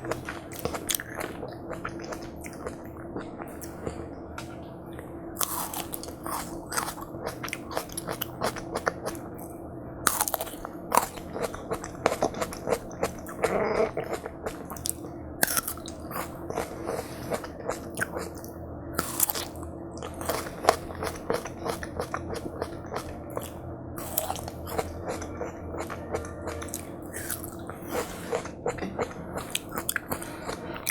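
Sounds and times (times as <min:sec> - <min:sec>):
wet chewing: 0:00.0 - 0:04.0, 0:05.4 - 0:30.9
steady low hum: 0:00.0 - 0:30.9.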